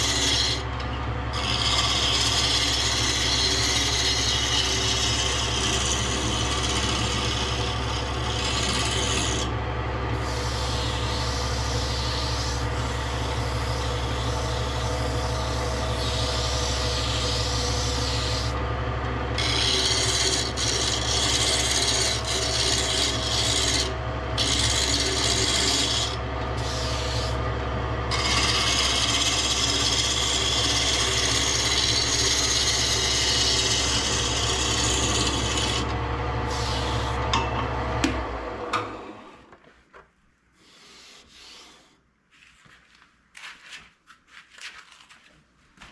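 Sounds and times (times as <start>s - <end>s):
abrasive tool rasping on wood: 0.0s - 0.6s, 1.4s - 9.5s, 19.4s - 27.4s, 28.1s - 35.9s
low machine hum: 0.0s - 39.6s.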